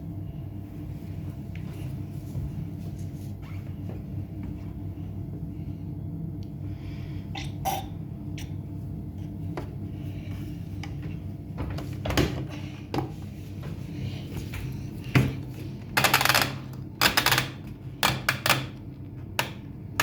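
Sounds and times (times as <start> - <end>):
washing machine motor hum: 0.0 - 20.0.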